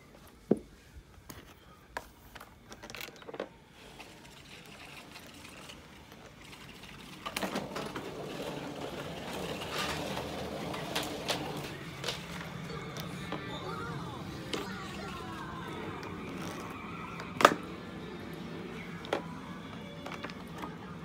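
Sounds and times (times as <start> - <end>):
vacuum cleaner motor running: 7.2 - 21.0.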